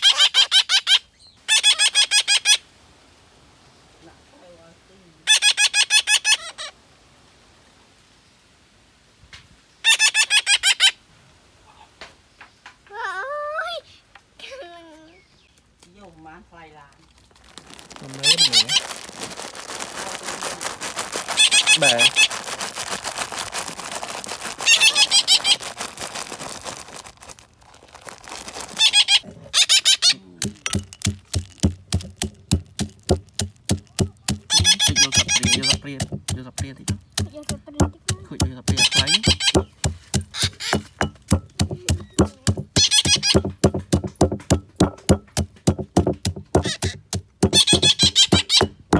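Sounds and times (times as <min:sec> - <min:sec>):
baby parrots chirping: 0:00.0 - 0:02.6, 0:18.2 - 0:18.8, 0:21.4 - 0:22.3, 0:24.7 - 0:25.6, 0:28.8 - 0:30.2, 0:34.5 - 0:35.8, 0:38.7 - 0:39.6, 0:40.3 - 0:40.8, 0:42.0 - 0:43.4, 0:46.6 - 0:48.8
parrot squawking: 0:28.8 - 0:30.3, 0:46.6 - 0:48.6.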